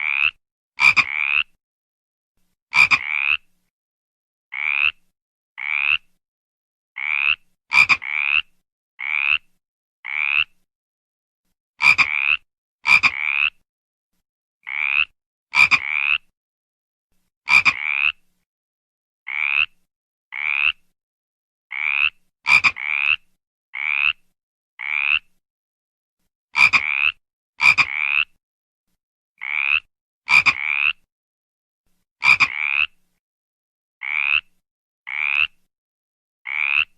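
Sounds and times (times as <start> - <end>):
frog croaking: 0.0 - 1.5, 2.7 - 3.5, 4.5 - 5.0, 5.6 - 6.1, 7.0 - 10.6, 11.8 - 13.6, 14.6 - 16.3, 17.5 - 18.2, 19.3 - 20.8, 21.7 - 24.2, 24.8 - 25.3, 26.6 - 28.3, 29.4 - 31.0, 32.2 - 33.0, 34.0 - 34.5, 35.1 - 35.6, 36.5 - 36.9.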